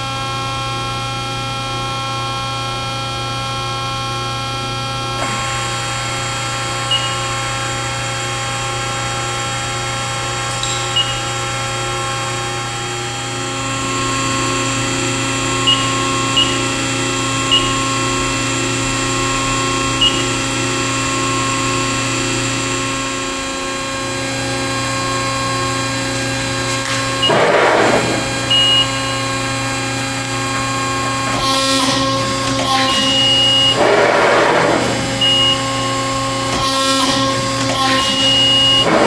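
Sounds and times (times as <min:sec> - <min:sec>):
hydraulic pump hum: 0:05.2 - 0:39.0.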